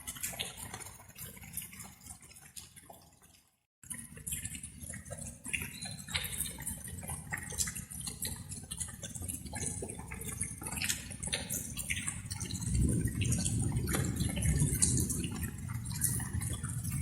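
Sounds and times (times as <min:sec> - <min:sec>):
rain drops splashing: 0:00.0 - 0:17.0.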